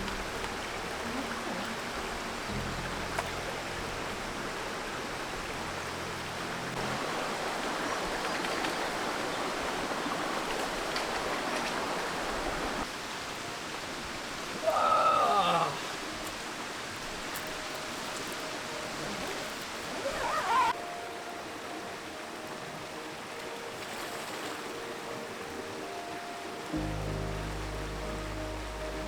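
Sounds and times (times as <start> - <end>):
running water rushing: 0.0 - 29.0.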